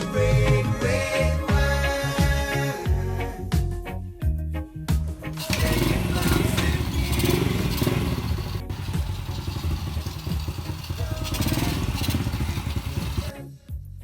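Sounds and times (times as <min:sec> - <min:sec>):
music with a beat: 0:00.0 - 0:05.4
motorcycle engine running: 0:05.4 - 0:13.4.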